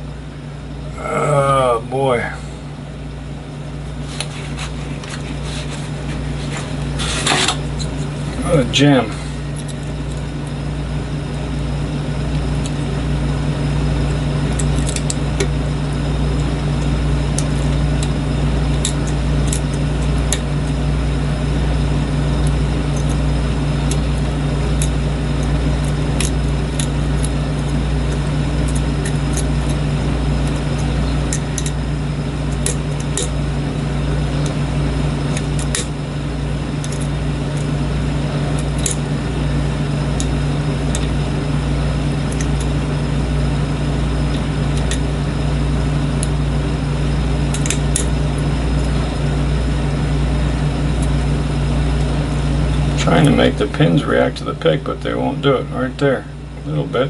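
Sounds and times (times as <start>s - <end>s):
low machine hum: 0.0s - 57.0s
lock pick clicking: 47.5s - 48.1s.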